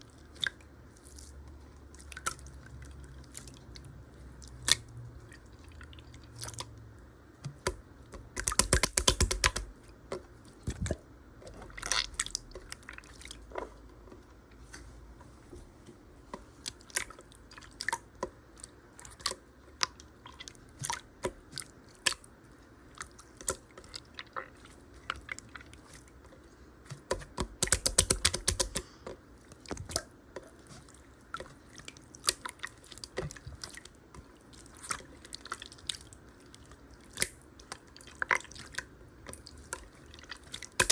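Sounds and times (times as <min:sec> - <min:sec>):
slime crackling: 0:08.2 - 0:09.7.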